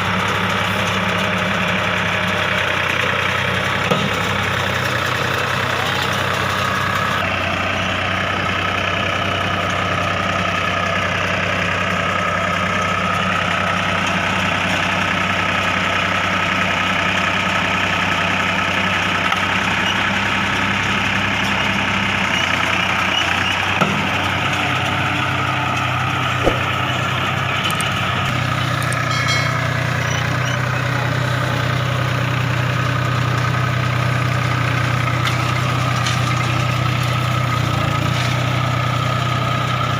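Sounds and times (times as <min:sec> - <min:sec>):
tractor diesel engine running: 0:00.0 - 0:39.9
sharp knocks: 0:26.4 - 0:27.0.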